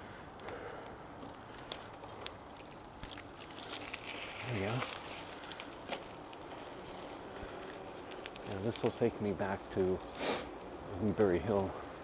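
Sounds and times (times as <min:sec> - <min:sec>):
bicycle tyres crunching on dirt: 0:00.5 - 0:09.6.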